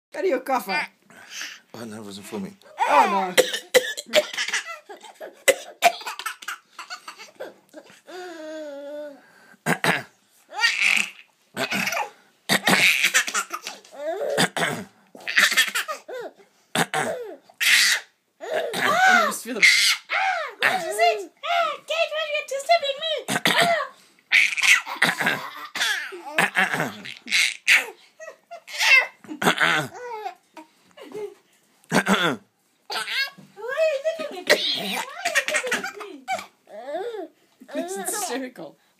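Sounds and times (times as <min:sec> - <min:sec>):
person coughing harshly: 0:02.9 - 0:06.6, 0:09.6 - 0:10.2, 0:11.6 - 0:13.6, 0:14.2 - 0:16.0, 0:16.8 - 0:17.8, 0:18.4 - 0:19.4, 0:20.6 - 0:21.0, 0:23.3 - 0:23.9, 0:24.9 - 0:27.1, 0:29.3 - 0:30.0, 0:31.9 - 0:33.1, 0:34.4 - 0:36.6.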